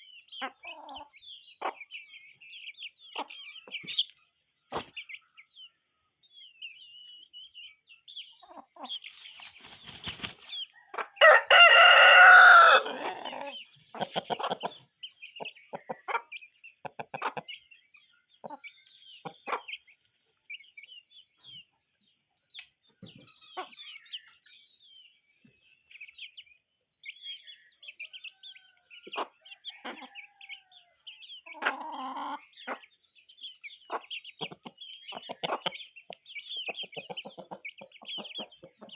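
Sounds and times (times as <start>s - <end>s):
chickens clucking and chirping: 0.0s - 38.9s
rooster crowing: 10.8s - 13.6s
loud bird call: 11.2s - 14.6s.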